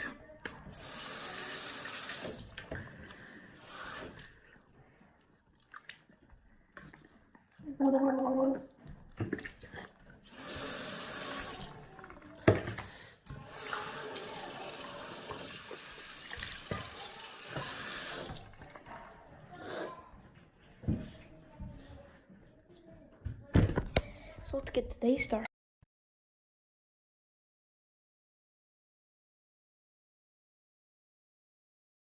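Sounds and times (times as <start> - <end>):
tap water running into sink: 0.4 - 4.4, 8.4 - 19.2.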